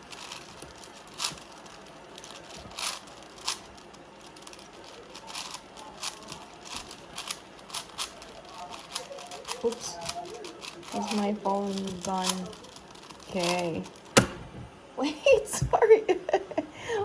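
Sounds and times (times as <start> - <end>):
puzzle cube layers clicking: 0.0 - 14.4.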